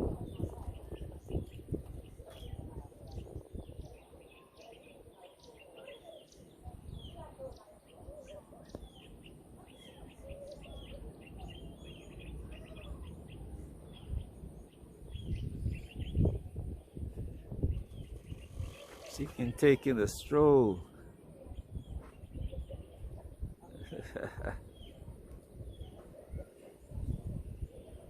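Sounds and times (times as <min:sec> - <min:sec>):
birds chirping: 0:00.0 - 0:28.0.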